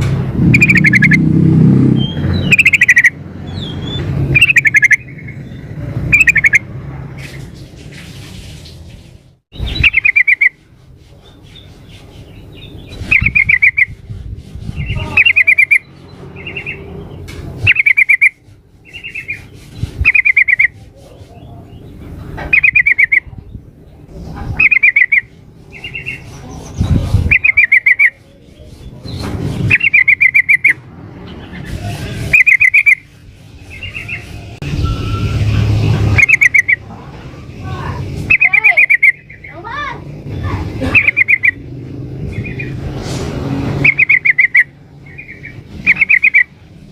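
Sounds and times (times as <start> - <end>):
bird chattering calls: 0.4 - 1.3, 1.9 - 6.7, 9.6 - 10.7, 11.3 - 23.4, 24.4 - 34.5, 36.1 - 36.9, 37.5 - 42.9, 43.8 - 46.6.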